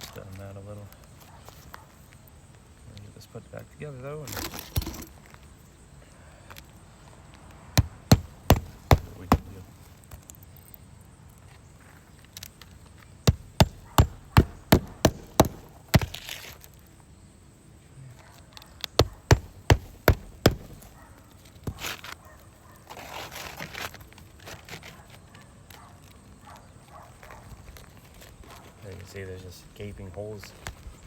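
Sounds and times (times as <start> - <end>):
shingles rustling and scraping: 4.2 - 5.4, 7.8 - 10.3, 11.8 - 16.8, 19.0 - 26.2, 27.4 - 29.4
hammer striking nails: 7.8 - 9.7, 13.3 - 16.4, 19.0 - 21.0.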